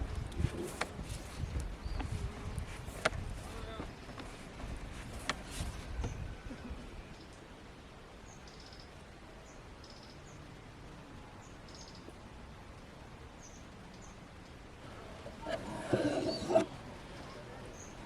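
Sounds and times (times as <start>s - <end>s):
faint bird chirps: 8.2s - 10.4s.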